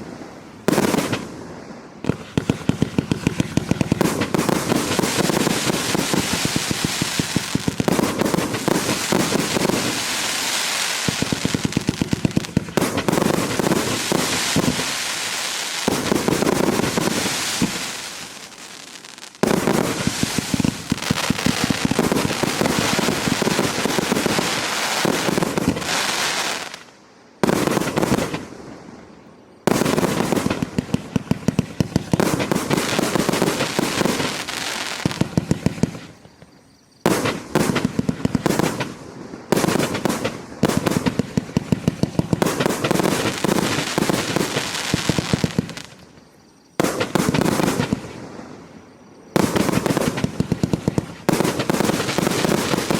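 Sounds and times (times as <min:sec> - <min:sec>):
fireworks rapid-fire reports and crackle: 0:00.0 - 0:52.9.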